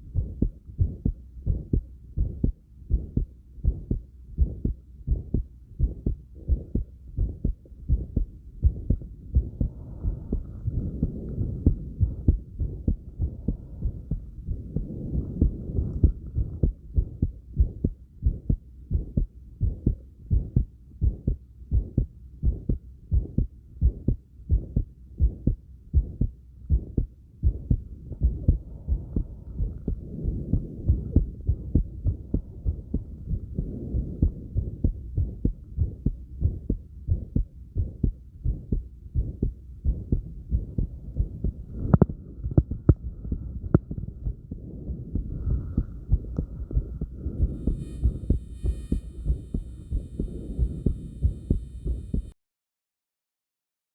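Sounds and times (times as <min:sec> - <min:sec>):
heartbeat thumps: 0:00.0 - 0:52.4
soft breathing: 0:08.7 - 0:16.8, 0:43.0 - 0:52.3
faint high tones: 0:47.4 - 0:52.2.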